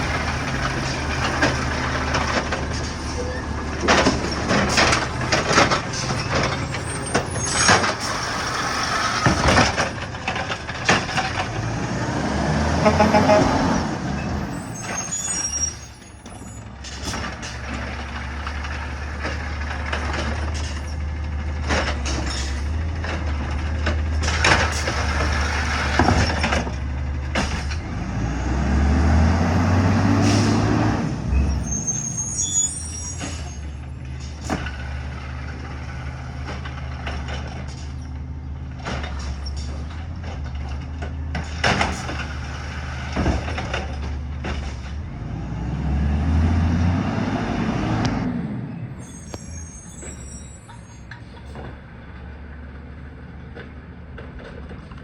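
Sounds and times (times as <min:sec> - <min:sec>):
metal clanks and bangs: 0:00.0 - 0:28.1, 0:32.8 - 0:45.2
garbage truck diesel engine: 0:00.0 - 0:55.0
brief high squeals: 0:13.3 - 0:16.7, 0:31.3 - 0:33.8, 0:49.0 - 0:51.4.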